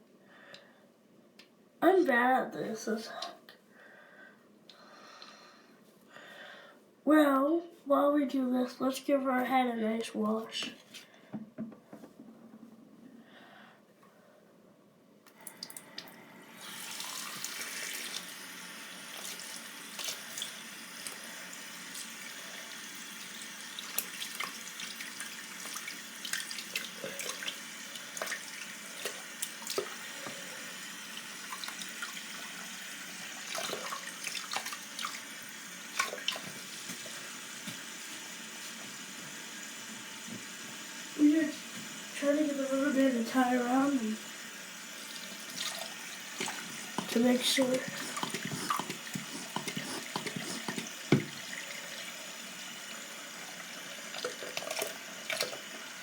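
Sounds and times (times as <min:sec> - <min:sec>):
tap water running: 0:15.3 - 0:56.0
water splashing: 0:35.9 - 0:37.1, 0:45.1 - 0:51.8.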